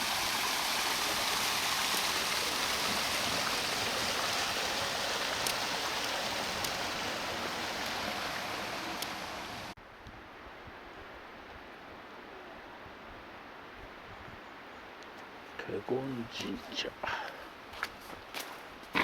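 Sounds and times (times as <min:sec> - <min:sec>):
water rushing: 0:00.0 - 0:09.8.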